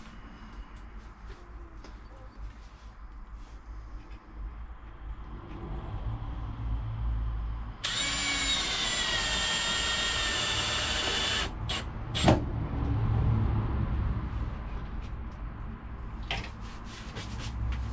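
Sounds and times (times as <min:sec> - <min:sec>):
power drill driving screws: 0:07.8 - 0:12.3.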